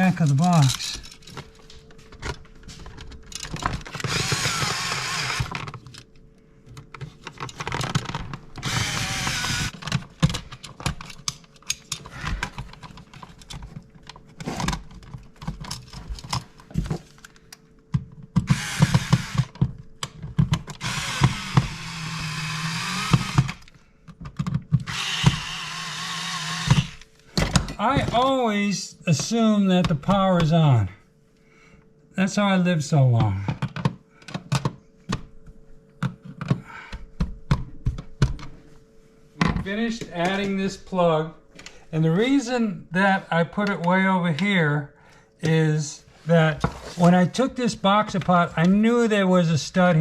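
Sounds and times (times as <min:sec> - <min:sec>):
power drill driving screws: 0:03.9 - 0:05.5, 0:08.6 - 0:09.8, 0:18.4 - 0:19.5, 0:20.8 - 0:23.6, 0:24.9 - 0:27.1.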